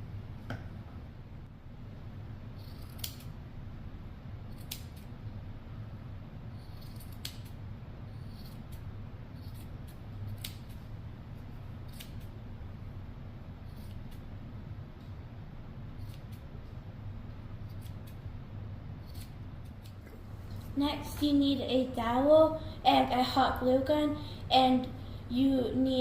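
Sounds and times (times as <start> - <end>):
steady low hum: 0.0 - 26.0
scissors snipping yarn: 2.6 - 3.4, 4.5 - 5.2, 6.5 - 10.8, 11.7 - 12.4, 13.6 - 14.3, 16.0 - 16.5, 17.7 - 18.3, 19.0 - 20.1.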